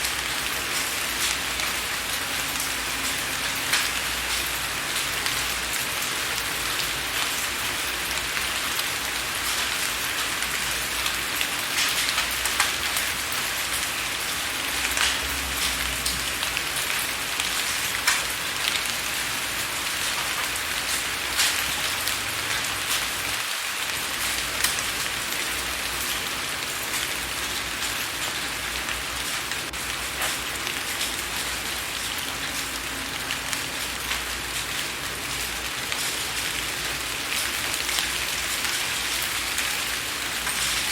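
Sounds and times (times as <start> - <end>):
steady rain hiss: 0.0 - 40.9.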